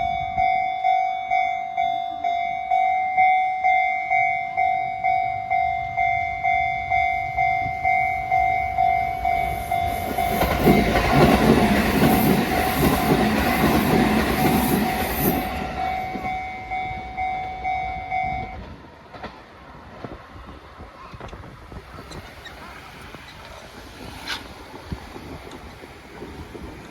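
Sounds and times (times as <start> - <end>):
level-crossing signal ringing: 0.0 - 18.6
electric train wheel noise: 0.0 - 26.9.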